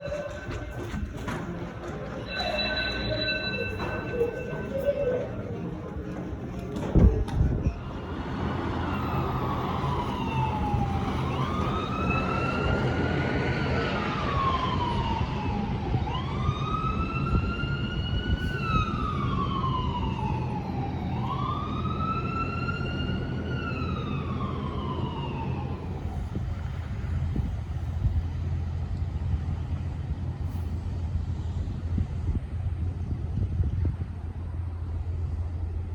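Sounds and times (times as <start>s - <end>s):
steady low rumble: 0.0s - 19.8s
emergency vehicle siren wailing: 0.0s - 27.2s.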